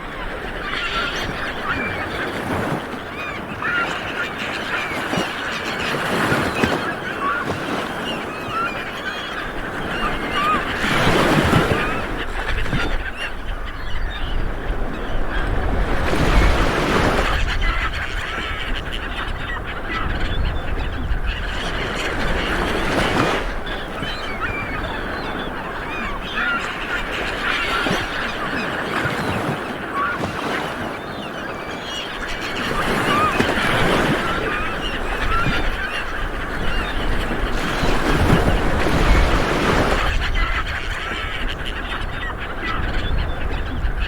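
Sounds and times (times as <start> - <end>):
waves washing onto beach: 0.0 - 42.8
birds calling: 0.0 - 44.0.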